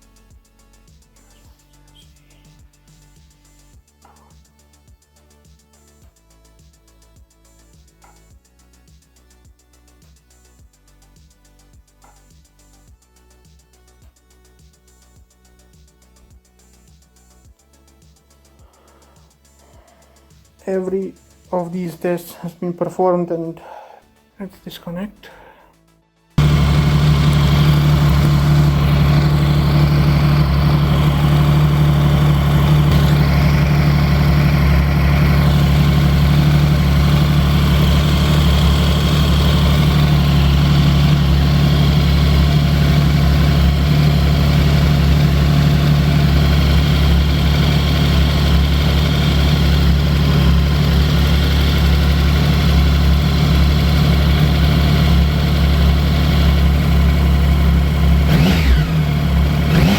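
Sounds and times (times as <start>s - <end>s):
engine idling: 26.4s - 59.9s.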